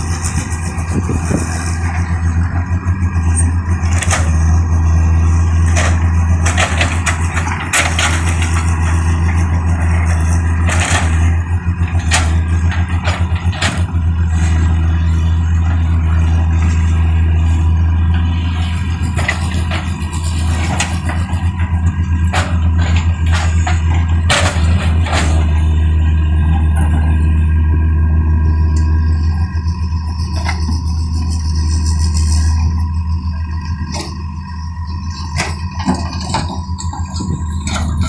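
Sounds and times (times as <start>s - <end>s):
excavator diesel engine droning: 0.0s - 38.0s
knocks and clanks: 5.6s - 14.9s, 19.0s - 25.8s.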